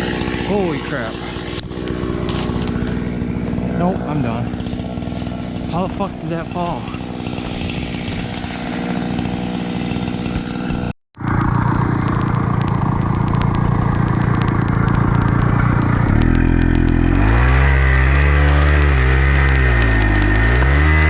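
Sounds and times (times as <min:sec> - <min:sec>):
chainsaw running steadily: 0:00.0 - 0:21.0.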